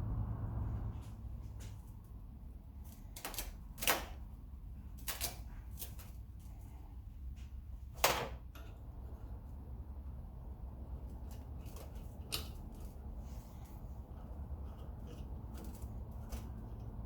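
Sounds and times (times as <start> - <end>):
steady low rumble: 0.0 - 2.8, 8.8 - 17.0.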